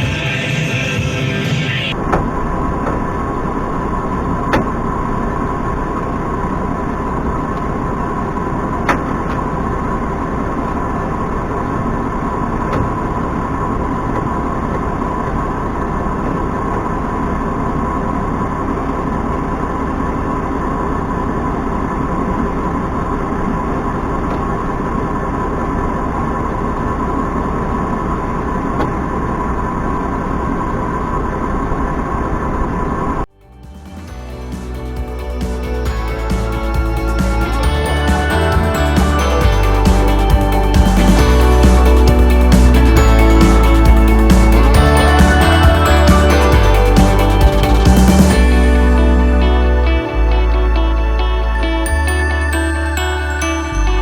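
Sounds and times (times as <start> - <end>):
steady whine: 0.0 - 54.0
tractor engine running: 0.0 - 54.0
sharp clicks or knocks: 4.5 - 5.0, 8.8 - 9.7.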